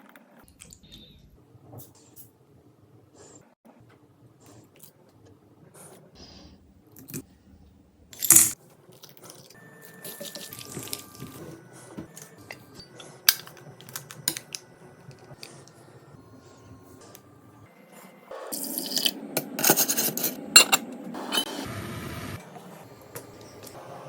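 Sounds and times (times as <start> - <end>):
metal utensils clinking on dishes: 8.2 - 11.4, 18.6 - 21.5.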